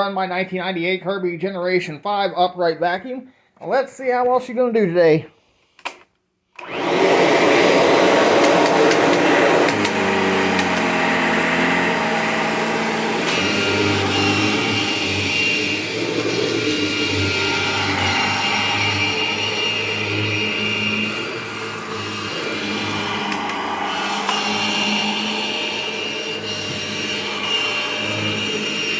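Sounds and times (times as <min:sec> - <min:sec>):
upright vacuum cleaner running: 0:06.6 - 0:28.9
thin high whine: 0:17.9 - 0:28.9.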